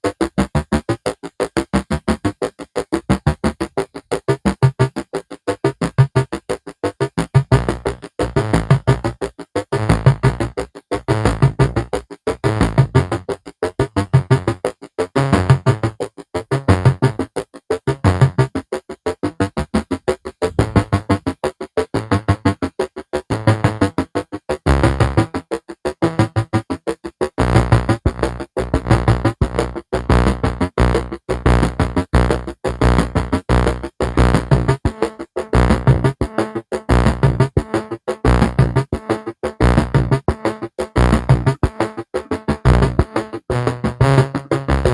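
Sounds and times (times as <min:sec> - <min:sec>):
pulsing bass: 0:00.2 - 0:18.6, 0:19.2 - 0:22.7, 0:23.3 - 0:25.4, 0:26.0 - 0:26.8, 0:27.4 - 0:44.9
synthesizer music: 0:20.5 - 0:21.1.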